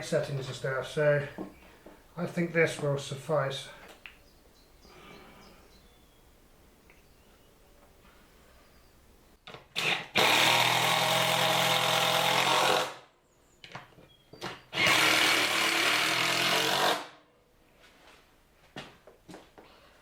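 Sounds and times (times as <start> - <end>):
power tool motor running: 9.8 - 13.0, 14.7 - 17.1.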